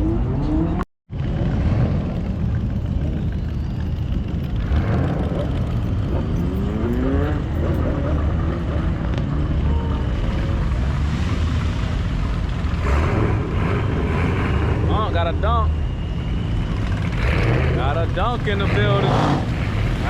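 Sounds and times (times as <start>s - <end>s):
car engine revving: 4.5s - 20.0s.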